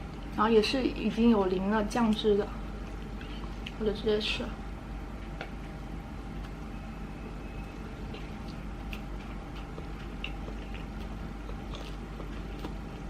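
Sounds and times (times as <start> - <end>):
steady low hum: 0.0 - 13.0
wet mouth chewing clicks: 7.7 - 13.0.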